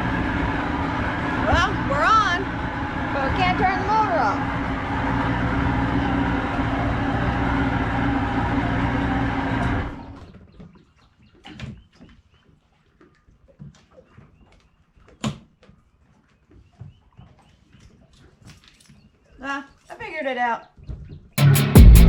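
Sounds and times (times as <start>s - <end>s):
engine running: 0.0s - 10.4s, 21.4s - 22.0s.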